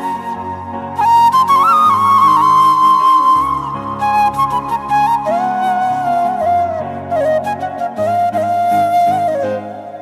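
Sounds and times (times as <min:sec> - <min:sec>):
flute-like melody: 0:00.0 - 0:10.0.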